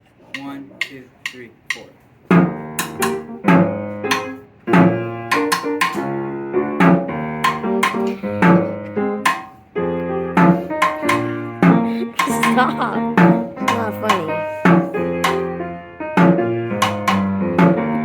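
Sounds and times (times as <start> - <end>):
band playing instrumental music: 12.2 - 14.5.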